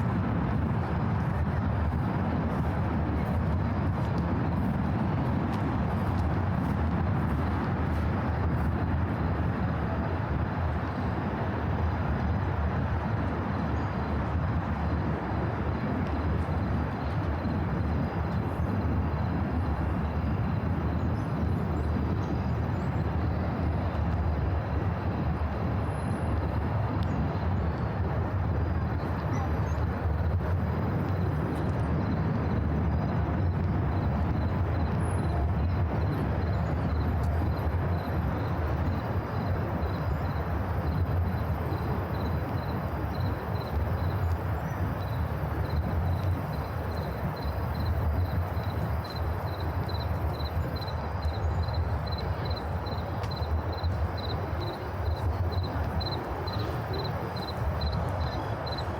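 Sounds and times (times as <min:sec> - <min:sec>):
city traffic rumble: 0:00.0 - 0:58.9
faint high insect chirping: 0:36.4 - 0:58.9.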